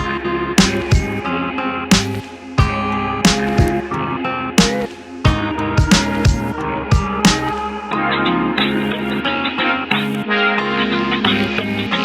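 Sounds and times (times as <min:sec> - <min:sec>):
drum hits: 0:00.0 - 0:01.2, 0:01.9 - 0:03.9, 0:04.6 - 0:07.6
plucked guitar: 0:00.0 - 0:12.0.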